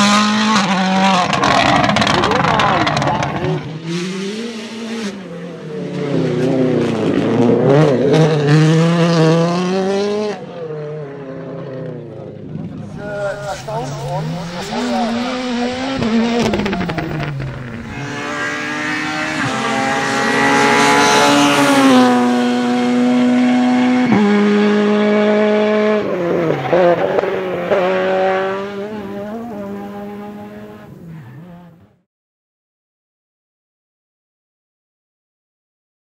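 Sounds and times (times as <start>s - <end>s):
car engine revving at full throttle: 0.0s - 31.8s
throttle blips on downshifts: 12.9s - 19.8s.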